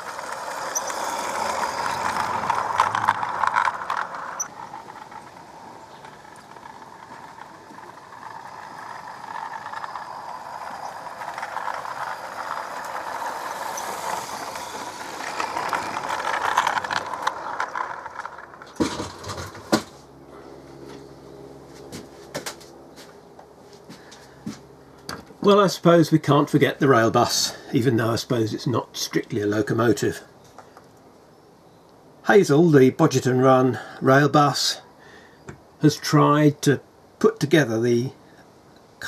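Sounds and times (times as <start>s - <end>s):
model locomotive wheels clattering: 0.0s - 20.2s, 23.9s - 31.1s, 32.3s - 34.8s.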